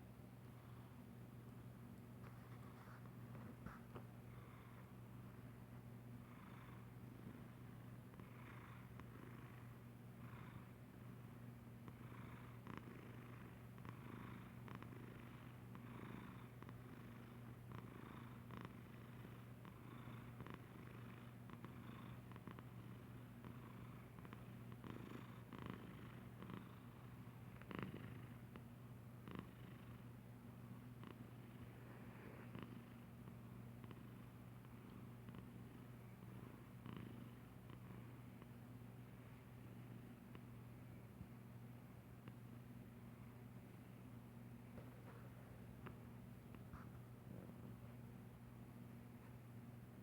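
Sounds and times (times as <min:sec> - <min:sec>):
cat purring: 0:06.1 - 0:41.0.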